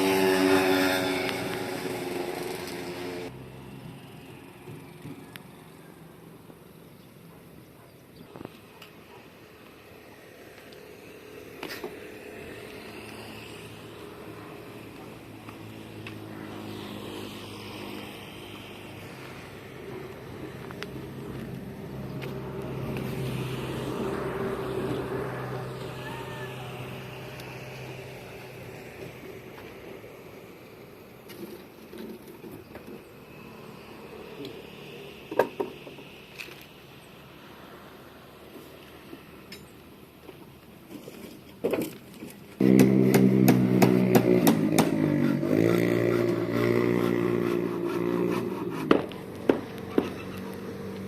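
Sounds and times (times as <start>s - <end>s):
engine humming: 0.0s - 7.4s.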